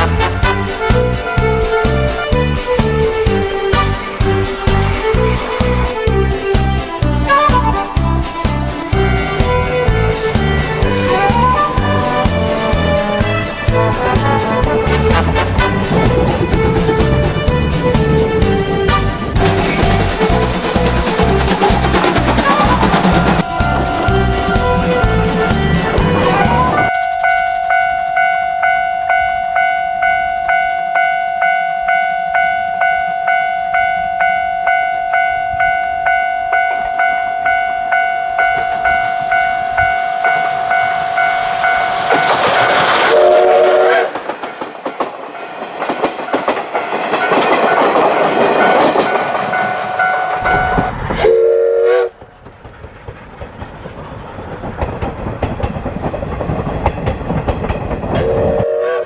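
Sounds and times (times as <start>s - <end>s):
locomotive chuffing: 0.0s - 26.9s
rail running noise: 0.0s - 59.0s
steam locomotive whistle blasts: 7.2s - 8.3s, 22.4s - 44.2s, 49.8s - 52.2s, 58.2s - 59.0s.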